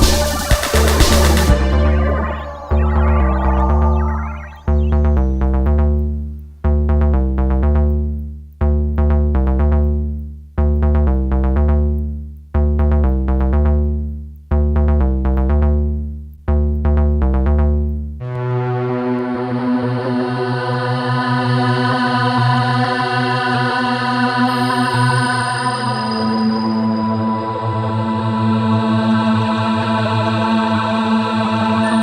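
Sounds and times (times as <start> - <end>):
synthesizer keyboard phrase: 1.3 - 5.5
droning synthesizer chord: 1.4 - 5.5, 18.2 - 22.2.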